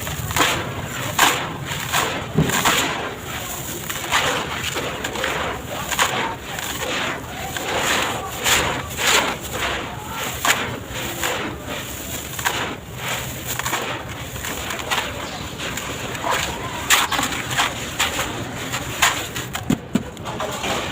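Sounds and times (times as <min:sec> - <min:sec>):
blocks crushed by hand: 0:00.0 - 0:20.9.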